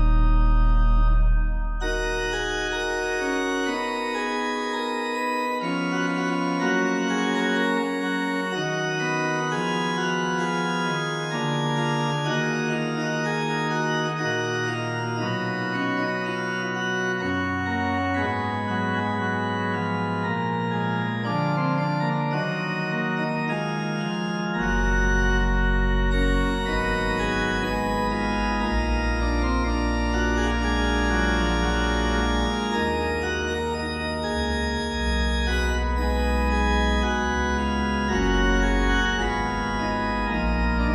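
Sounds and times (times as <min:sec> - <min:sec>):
deep organ bass notes: 0:00.0 - 0:40.9
slow organ chords: 0:00.0 - 0:40.9.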